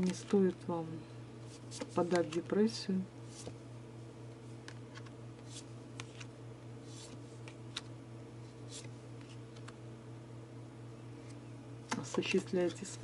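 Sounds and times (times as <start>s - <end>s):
cards rustling and clicking: 1.5s - 2.5s, 3.3s - 3.6s, 4.6s - 7.9s, 8.6s - 9.8s.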